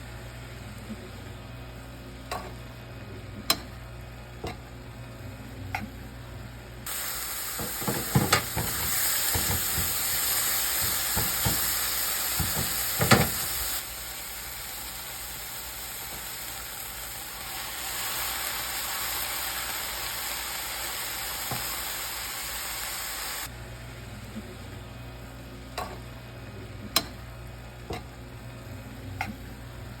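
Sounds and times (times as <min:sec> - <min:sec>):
greens sizzling in a pan: 0:06.8 - 0:23.5.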